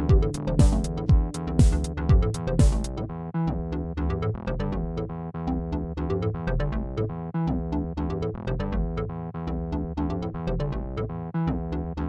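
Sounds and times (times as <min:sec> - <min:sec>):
deep kick drum: 0:00.0 - 0:03.0
held synth chords: 0:00.0 - 0:07.0
hi-hats: 0:00.3 - 0:01.9.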